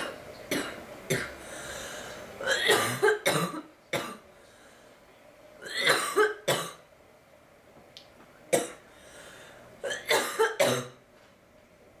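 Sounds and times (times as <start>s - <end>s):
girl coughing: 2.4s - 4.2s, 5.6s - 6.8s, 9.8s - 11.0s.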